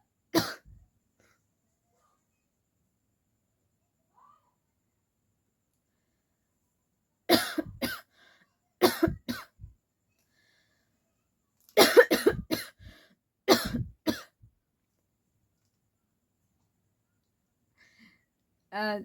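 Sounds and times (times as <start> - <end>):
woman coughing: 0.4 - 0.8, 7.3 - 8.0, 8.8 - 9.6, 11.8 - 12.8, 13.5 - 14.3.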